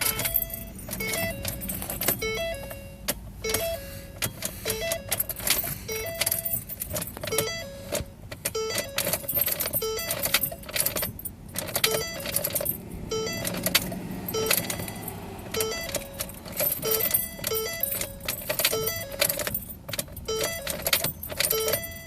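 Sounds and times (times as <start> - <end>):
electronic tones: 0.0 - 6.6, 7.3 - 10.7, 11.8 - 19.4
car starter clicking and chattering: 0.0 - 22.0.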